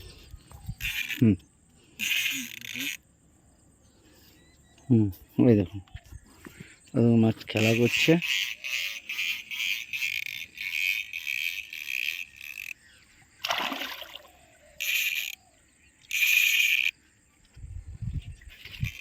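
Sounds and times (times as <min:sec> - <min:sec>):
fish splashing at water surface: 0:13.4 - 0:14.4.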